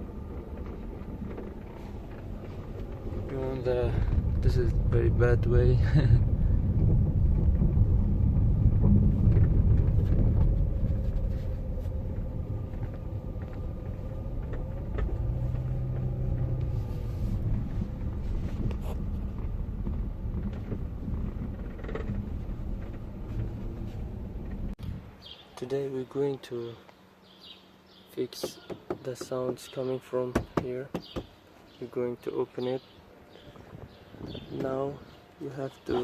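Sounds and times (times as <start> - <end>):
car road and drivetrain rumble: 0.0 - 25.4.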